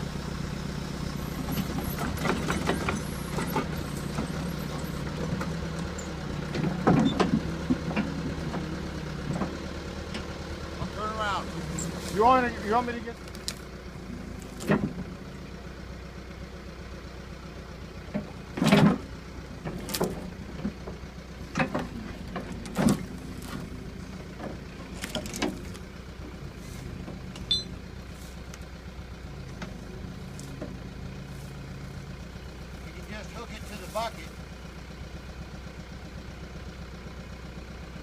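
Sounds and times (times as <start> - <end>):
backhoe engine idling: 0.0 - 38.0
sharp knocks and clanks: 6.5 - 8.7.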